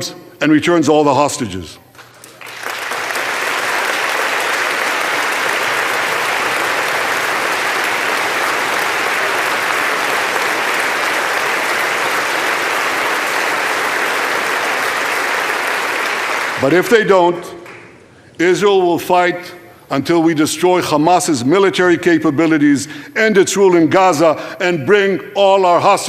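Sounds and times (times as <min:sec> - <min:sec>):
audience applauding: 0:01.9 - 0:17.0.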